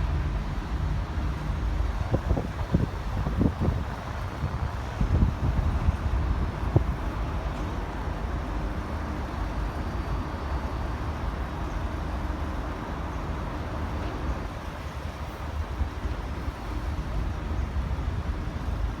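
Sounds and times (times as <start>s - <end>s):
wind buffeting microphone: 0.2s - 8.8s.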